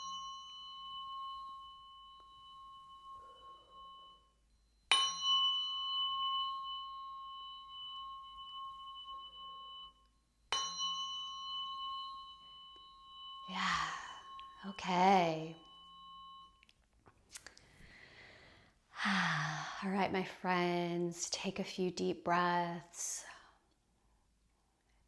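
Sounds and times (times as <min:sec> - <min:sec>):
tuning fork ringing: 0:00.0 - 0:16.9.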